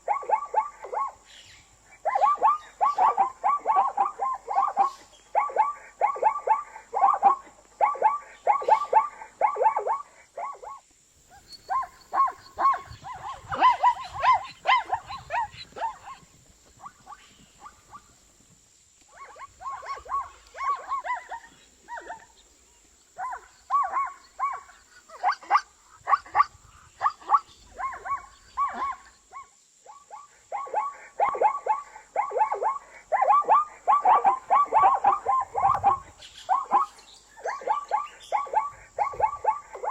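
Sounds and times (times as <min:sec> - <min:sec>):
zebra yelping calls: 0:11.3 - 0:18.2, 0:19.1 - 0:22.4, 0:30.5 - 0:39.9.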